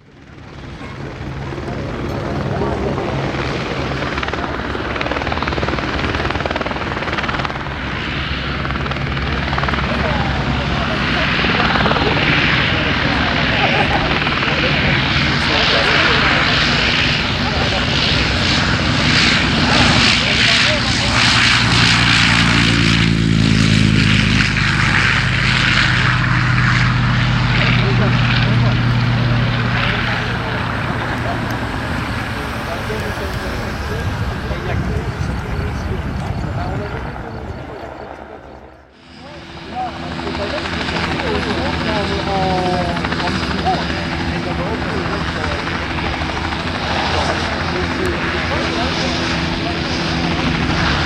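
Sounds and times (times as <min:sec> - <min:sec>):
aircraft engine droning: 0:00.0 - 0:51.0.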